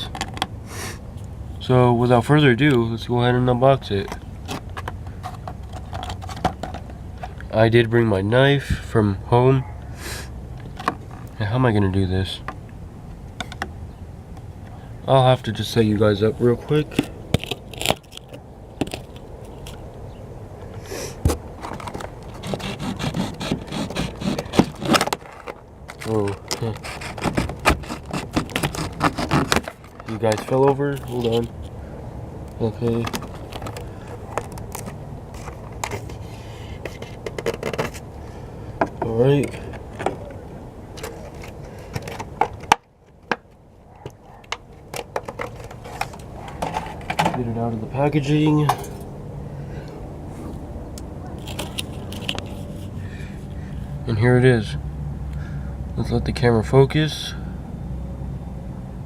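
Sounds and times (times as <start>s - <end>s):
camera handling scraping and rustling: 4.0s - 7.5s, 10.5s - 11.4s, 16.7s - 31.8s, 32.5s - 38.2s, 38.9s - 47.5s, 51.3s - 53.6s
plastic packaging being opened: 51.4s - 52.8s.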